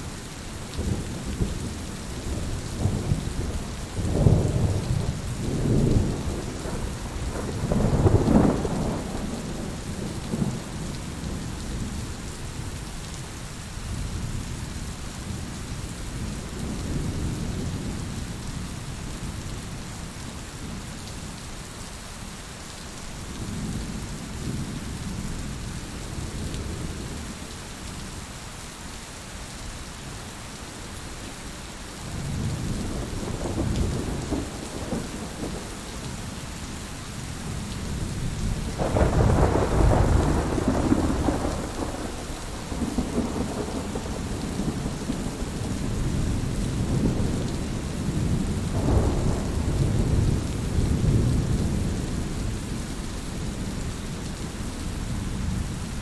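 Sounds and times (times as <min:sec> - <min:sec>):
steady rain: 0:00.0 - 0:56.0
rolling thunder: 0:00.8 - 0:11.9, 0:32.2 - 0:36.4, 0:37.6 - 0:52.8.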